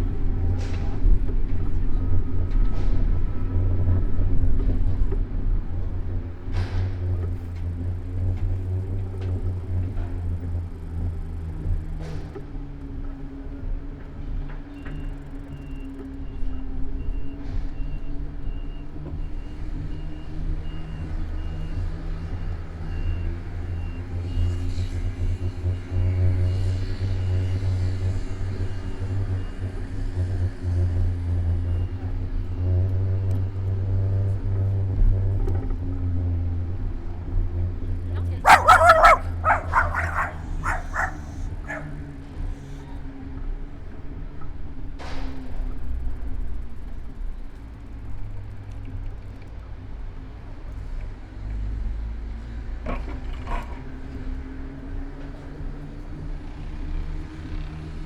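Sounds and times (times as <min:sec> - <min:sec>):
city traffic rumble: 0:00.0 - 0:58.0
vehicle engine droning: 0:31.6 - 0:44.7
motor vehicle engine humming: 0:38.4 - 0:42.3.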